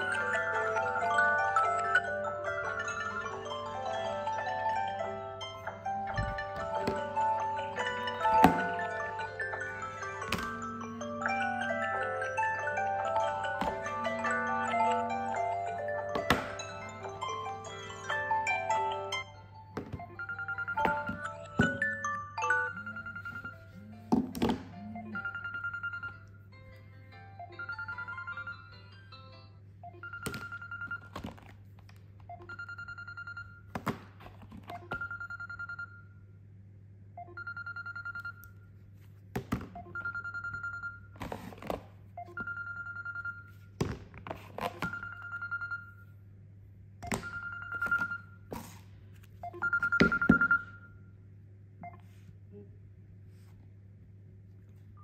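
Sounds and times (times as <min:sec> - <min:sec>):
melodic ringtone: 0:00.0 - 0:23.9, 0:24.8 - 0:31.1, 0:32.3 - 0:33.6, 0:34.8 - 0:36.1, 0:37.2 - 0:38.4, 0:39.8 - 0:41.1, 0:42.2 - 0:43.6, 0:44.8 - 0:46.1, 0:47.1 - 0:48.4, 0:49.4 - 0:50.9.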